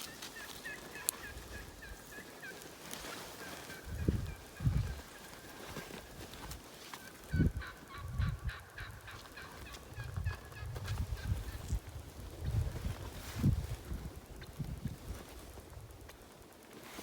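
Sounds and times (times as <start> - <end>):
wild turkey yelps: 0.0 - 5.5, 6.9 - 11.5
wind thumps on microphone: 9.9 - 15.1.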